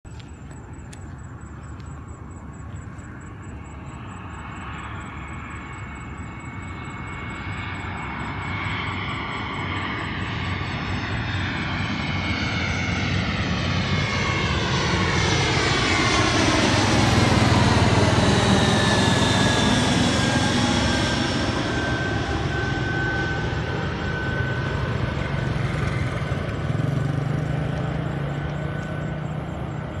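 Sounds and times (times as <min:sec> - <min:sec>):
engine whine dropping in pitch: 0:00.1 - 0:30.0
jet engines passing by: 0:00.1 - 0:30.0.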